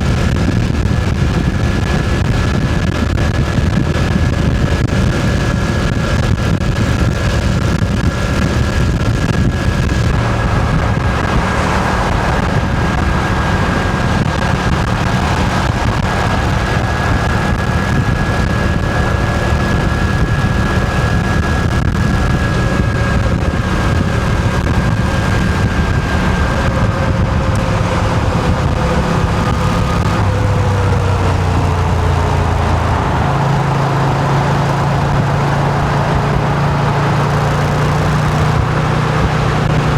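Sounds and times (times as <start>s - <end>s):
motorcycle engine running: 0.0s - 39.9s
wind noise on microphone: 0.0s - 39.9s.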